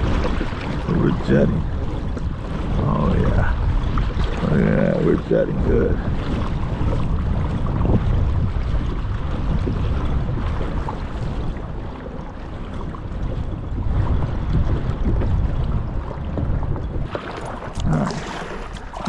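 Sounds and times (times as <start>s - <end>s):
water rushing along kayak hull: 0.0s - 19.0s
wind buffeting microphone: 0.0s - 19.0s.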